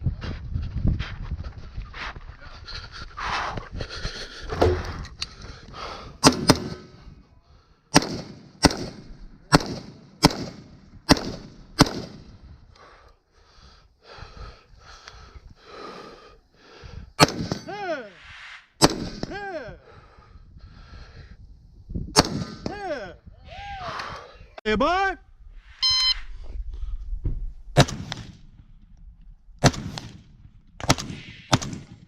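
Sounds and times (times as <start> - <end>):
gunshots: 6.2 - 7.0, 7.9 - 12.3, 17.2 - 17.9, 18.8 - 19.5, 22.2 - 22.8, 27.8 - 28.5, 29.6 - 32.0.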